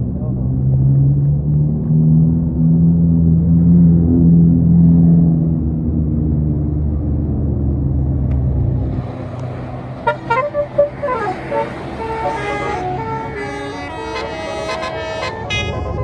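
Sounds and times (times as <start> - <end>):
bus engine running: 0.0 - 16.0
musical bus horn: 10.0 - 16.0.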